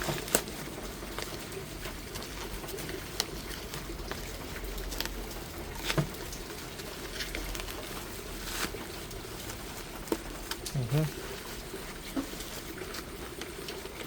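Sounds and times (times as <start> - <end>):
clicks and knocks from handling packaging: 0.0 - 14.0.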